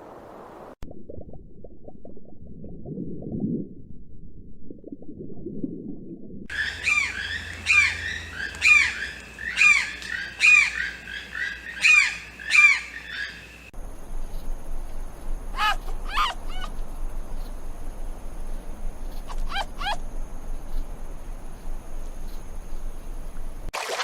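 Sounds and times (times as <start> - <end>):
bird calling loudly: 6.5 - 13.7, 15.6 - 16.8, 19.3 - 20.0.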